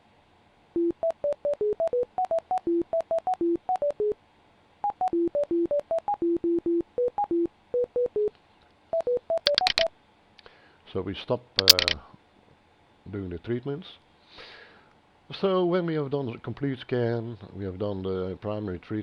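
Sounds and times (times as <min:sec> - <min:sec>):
computer beeps at varied pitches: 0:09.4 - 0:09.9, 0:11.6 - 0:12.0
clicks: 0:09.5 - 0:09.9, 0:11.6 - 0:12.0.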